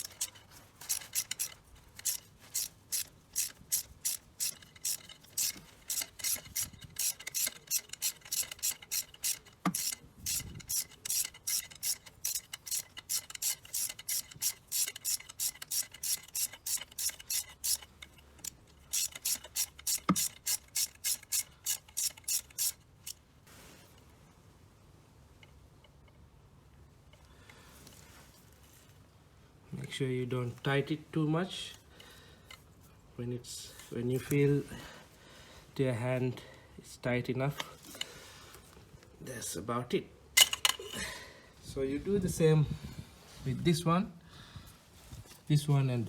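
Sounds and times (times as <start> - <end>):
ratchet wrench clicking: 0.0 - 23.2.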